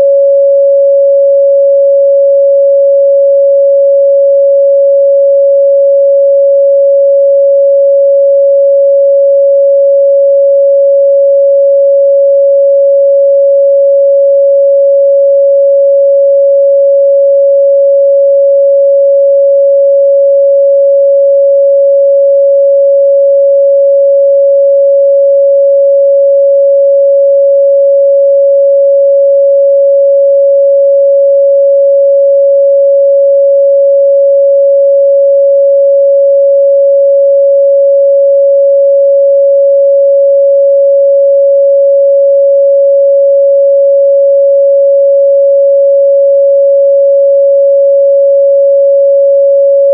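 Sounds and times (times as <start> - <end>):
sine-wave test tone: 0.0 - 49.9.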